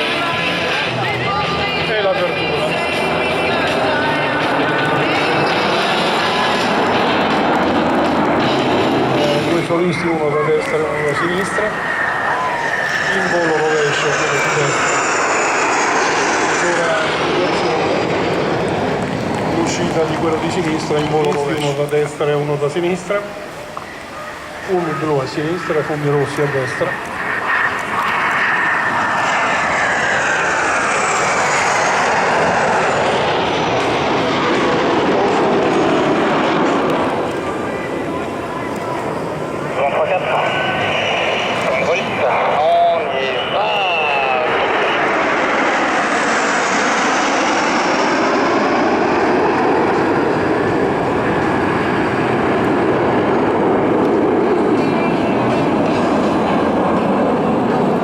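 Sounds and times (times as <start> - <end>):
high whine sliding down: 0.0 - 21.4
jet aircraft passing: 0.0 - 58.0.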